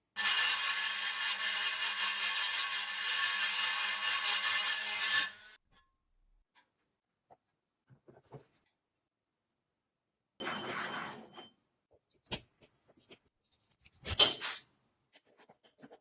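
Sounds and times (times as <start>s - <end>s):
power tool grinding metal: 0.2s - 5.6s.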